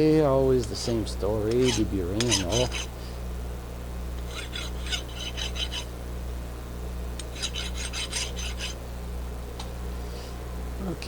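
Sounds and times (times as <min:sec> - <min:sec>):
steady low hum: 0:00.0 - 0:11.0
quick rasping strokes on metal: 0:01.5 - 0:02.9, 0:04.2 - 0:05.9, 0:07.2 - 0:08.8.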